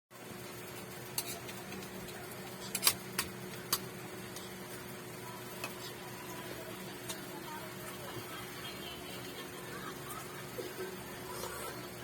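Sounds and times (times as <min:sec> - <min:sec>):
steady low hum: 0:00.2 - 0:12.0.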